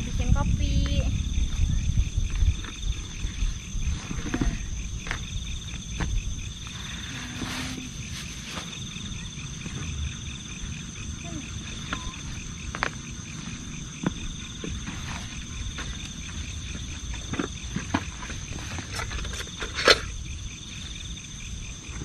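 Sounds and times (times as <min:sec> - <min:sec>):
low rumbling: 0:00.0 - 0:17.7
insects chirring: 0:00.0 - 0:22.0
rapidly pulsing chirp: 0:08.0 - 0:14.6.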